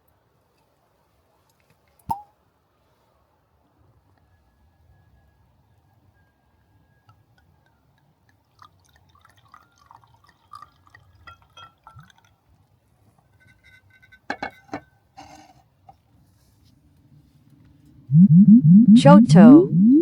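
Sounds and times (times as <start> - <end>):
faint liquid drips: 7.1 - 12.9
glassware clinking: 11.3 - 12.1.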